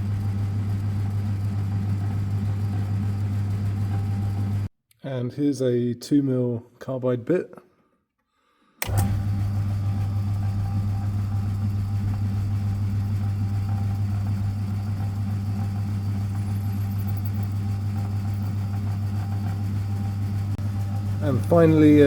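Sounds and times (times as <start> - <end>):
machine tool motor humming: 0.0 - 4.7, 8.8 - 22.0
drill bit drilling steel: 9.0 - 20.0, 21.0 - 22.0.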